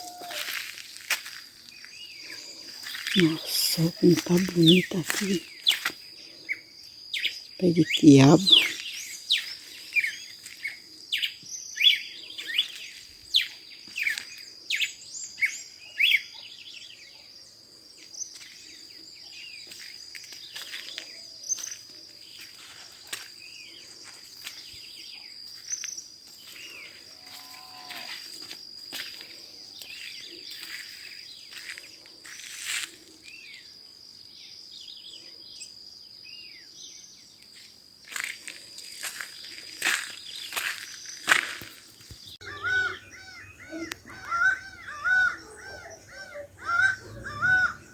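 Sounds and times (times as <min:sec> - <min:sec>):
wild birds chirping: 0:00.0 - 0:28.4, 0:29.1 - 0:47.9
high-pitched insect drone: 0:19.7 - 0:33.8.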